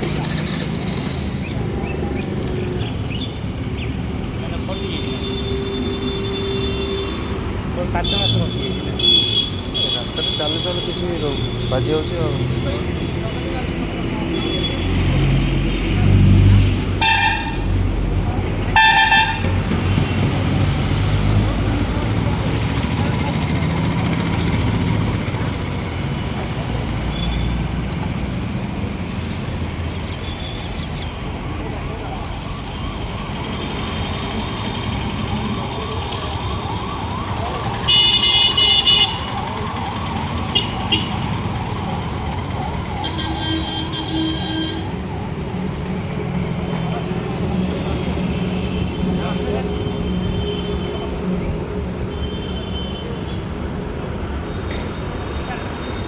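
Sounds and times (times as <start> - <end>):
road traffic rumble: 0.0 - 56.0
high-pitched vehicle horn honks: 17.0 - 17.7, 18.8 - 19.6.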